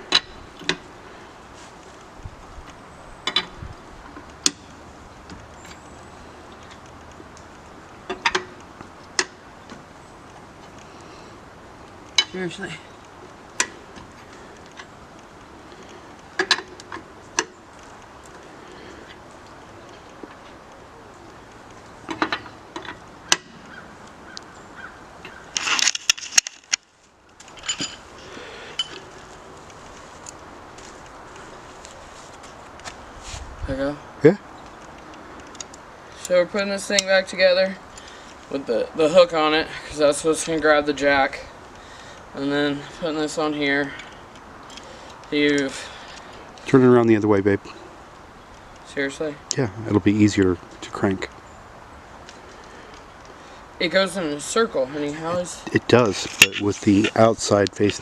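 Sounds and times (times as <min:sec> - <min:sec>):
low background hiss: 0:00.0 - 0:58.0
clatter and rustling: 0:25.3 - 0:33.4
metal tools clicking and clanking: 0:27.4 - 0:28.1, 0:28.7 - 0:29.1, 0:56.2 - 0:57.3
metal tools clinking: 0:27.4 - 0:29.1.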